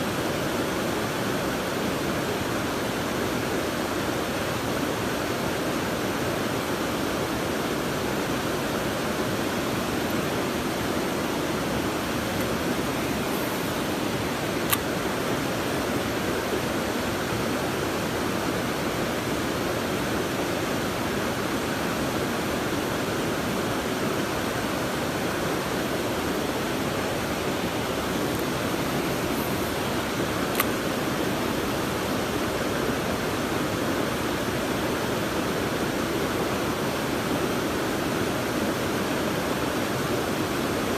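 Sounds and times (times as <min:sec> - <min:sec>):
fast-flowing stream water: 0:00.0 - 0:40.9.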